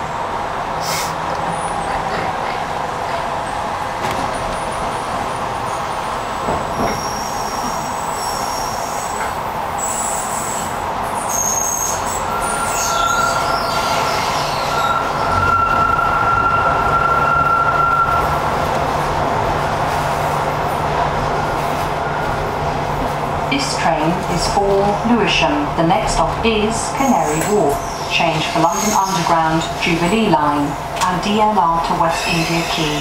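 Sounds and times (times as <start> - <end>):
train running: 0.0 - 33.0
train wheels squealing: 6.7 - 18.3, 27.0 - 29.3.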